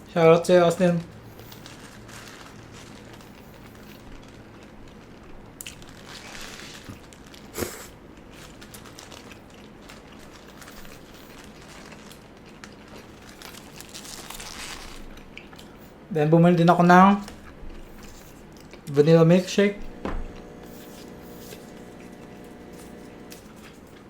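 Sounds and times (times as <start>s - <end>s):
paper food wrapping crinkling: 0.5s - 15.8s, 19.4s - 24.0s.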